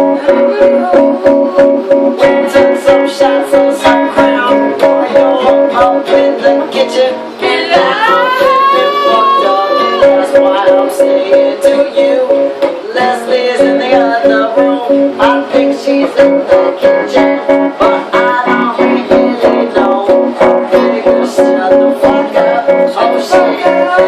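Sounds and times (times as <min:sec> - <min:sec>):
plucked guitar music with beat: 0:00.0 - 0:24.0.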